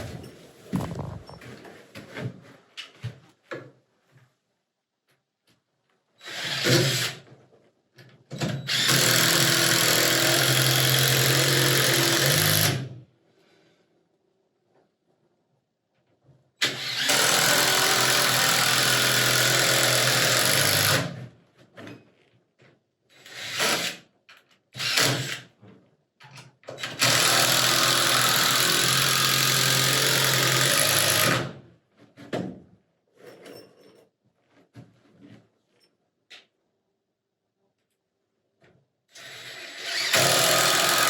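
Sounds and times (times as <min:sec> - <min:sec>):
power drill driving screws: 0:06.2 - 0:07.2, 0:08.4 - 0:12.9, 0:16.6 - 0:21.2, 0:23.2 - 0:24.0, 0:24.8 - 0:25.5, 0:26.8 - 0:31.5, 0:39.2 - 0:41.0.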